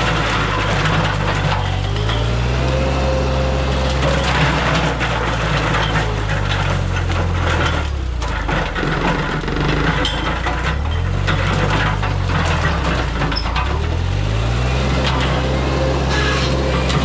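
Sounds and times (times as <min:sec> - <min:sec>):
skid steer engine running hard: 0:00.0 - 0:17.0
wood and brush cracking: 0:00.0 - 0:17.0.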